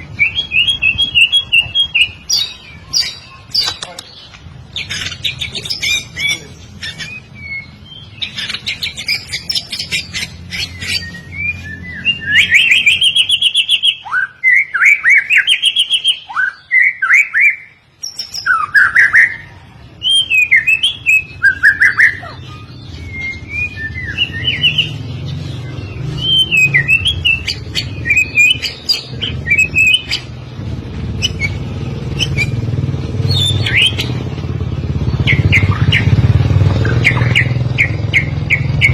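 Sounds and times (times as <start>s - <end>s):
bird singing whistles and chatter: 0.0s - 30.4s, 31.1s - 34.3s, 35.0s - 38.9s.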